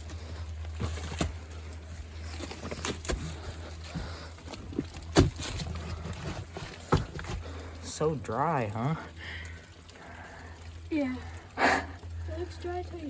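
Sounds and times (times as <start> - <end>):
footsteps crunching on stones: 0.0 - 7.8.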